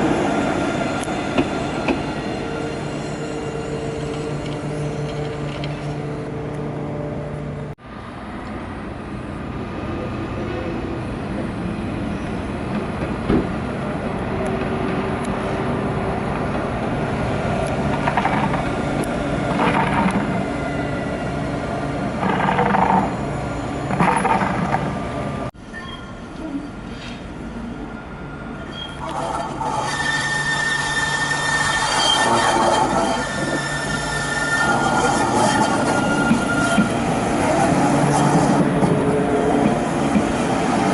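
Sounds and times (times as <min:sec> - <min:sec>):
tram rumbling on rails: 0:00.0 - 0:40.9
high squealing tones: 0:28.6 - 0:37.1.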